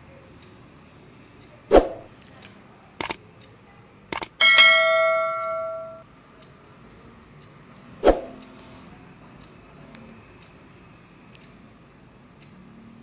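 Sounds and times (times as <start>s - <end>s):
ringing metal clang: 4.2s - 6.0s
metal utensils knocking on a pot: 4.4s - 6.0s.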